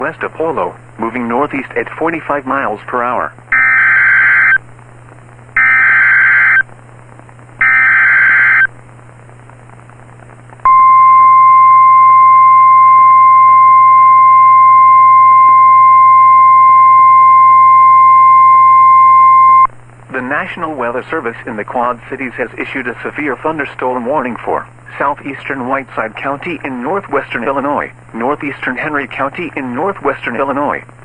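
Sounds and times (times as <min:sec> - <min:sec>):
steady warning alarm tone: 0:03.6 - 0:04.6, 0:05.6 - 0:06.6, 0:07.6 - 0:08.7
digital data bursts: 0:05.6 - 0:06.6, 0:07.6 - 0:08.7.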